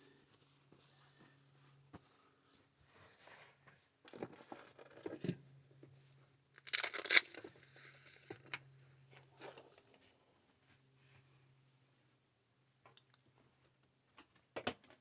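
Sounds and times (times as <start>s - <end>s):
rustling and crinkling handling: 0.0s - 10.8s
faint low hum: 0.0s - 14.6s.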